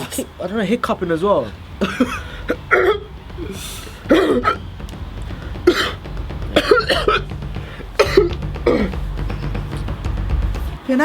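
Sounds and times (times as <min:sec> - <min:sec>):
man coughing and hiccuping: 0:01.8 - 0:03.1, 0:04.1 - 0:04.6, 0:05.7 - 0:06.0, 0:06.6 - 0:07.2, 0:08.0 - 0:09.0.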